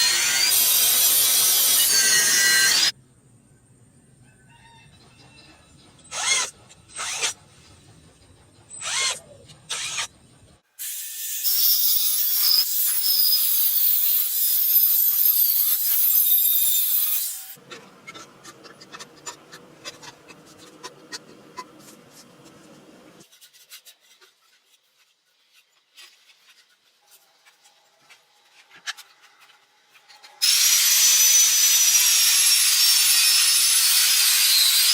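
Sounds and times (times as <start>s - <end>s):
tool rasping on material: 6.1s - 7.5s, 8.7s - 10.1s.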